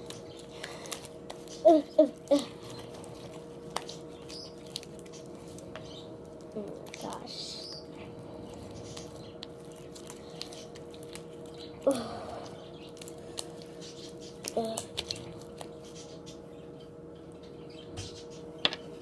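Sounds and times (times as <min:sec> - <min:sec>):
steady hum: 0:00.0 - 0:19.0.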